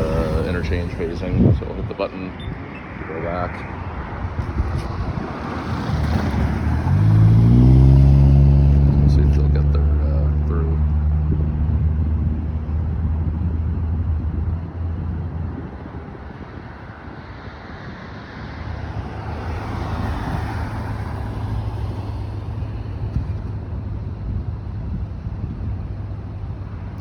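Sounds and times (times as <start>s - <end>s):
vehicle engine idling: 0.0s - 1.6s, 20.6s - 27.0s
vehicle passing by: 0.0s - 1.6s, 4.2s - 14.0s, 17.1s - 27.0s.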